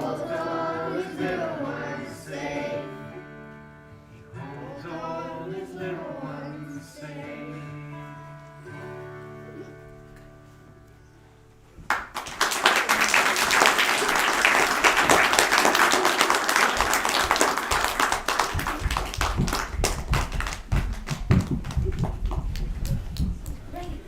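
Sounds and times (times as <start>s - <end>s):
audience applause: 11.9s - 23.4s.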